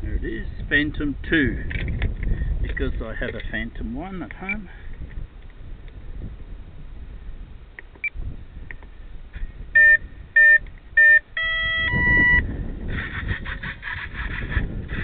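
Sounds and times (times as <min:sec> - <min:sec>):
motor startup beeps: 0:09.8 - 0:12.4.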